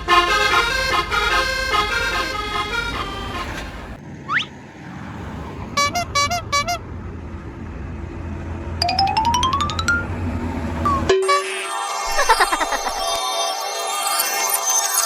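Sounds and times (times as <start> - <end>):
low engine hum: 0.0 - 11.1
short rising whistle: 4.3 - 4.5.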